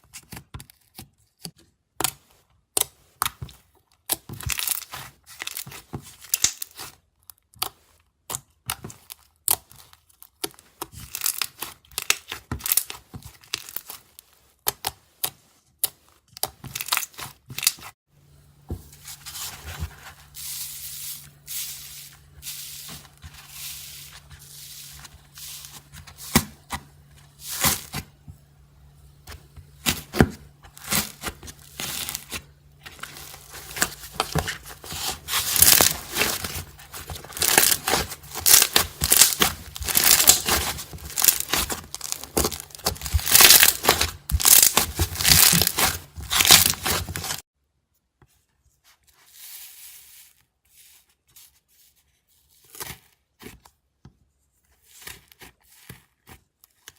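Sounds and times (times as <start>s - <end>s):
slime crust crackling: 28.8s - 47.4s.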